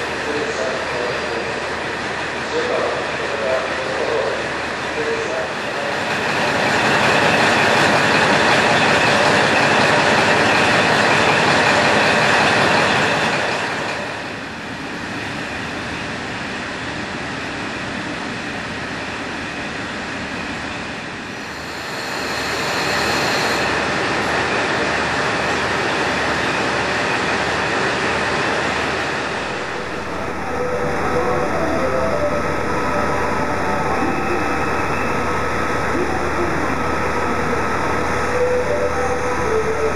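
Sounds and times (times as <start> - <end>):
diesel railcar rumbling: 23.6 - 39.9.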